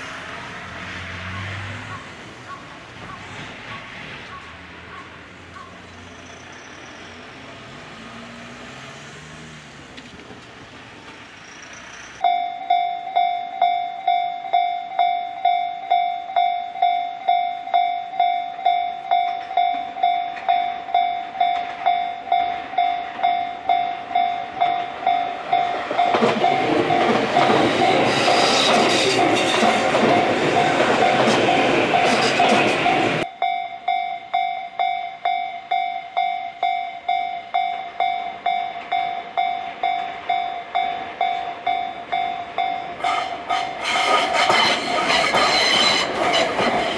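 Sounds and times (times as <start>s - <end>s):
level-crossing warning bell: 11.8s - 46.9s
electric train running: 18.0s - 33.3s, 35.7s - 46.9s.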